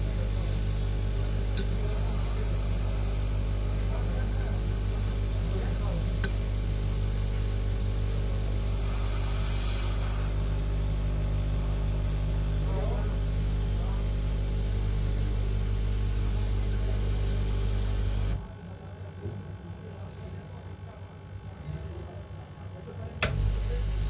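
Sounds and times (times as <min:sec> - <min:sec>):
air hissing: 0:00.0 - 0:07.1, 0:07.8 - 0:12.0
electrical hum: 0:00.0 - 0:24.0.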